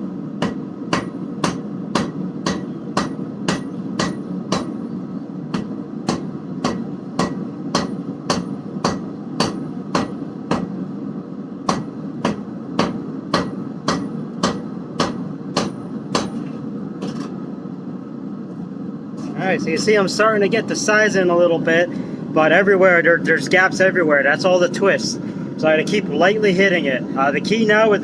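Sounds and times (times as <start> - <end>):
steady low noise: 0.0 - 28.0
hammer striking hot steel on anvil: 0.4 - 4.8, 5.5 - 10.8, 11.6 - 17.4.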